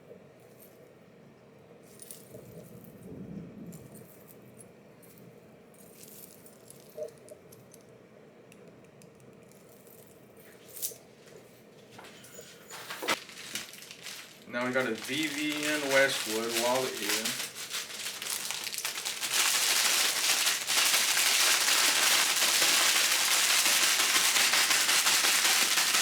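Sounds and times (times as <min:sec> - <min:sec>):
metal wallet chain jingling: 0:12.3 - 0:19.2.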